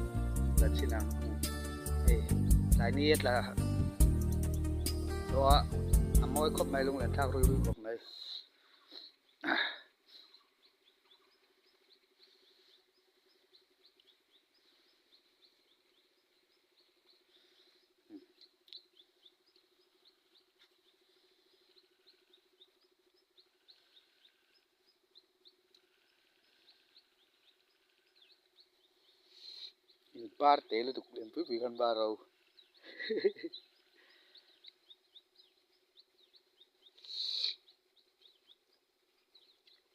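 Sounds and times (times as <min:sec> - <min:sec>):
high-pitched animal chirping: 0:37.0 - 0:37.7.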